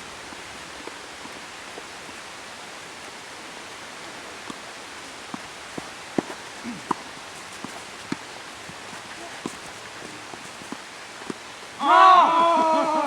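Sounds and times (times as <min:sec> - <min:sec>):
rain falling: 0:00.0 - 0:13.0.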